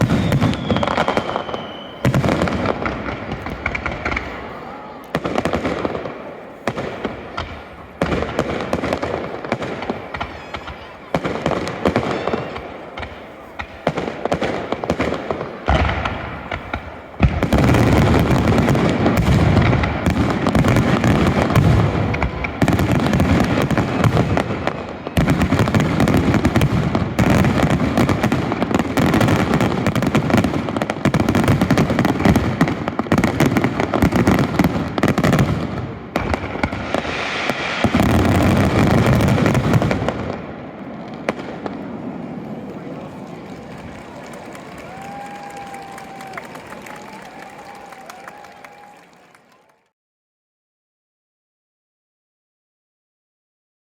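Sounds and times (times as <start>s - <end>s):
fireworks booms and crackles: 0.0s - 48.9s.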